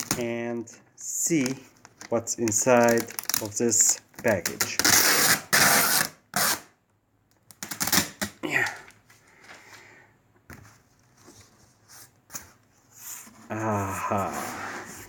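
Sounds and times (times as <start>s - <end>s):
package rustling and scraping: 1.4s - 4.7s
tape ripping off package: 1.4s - 6.8s, 7.5s - 8.4s.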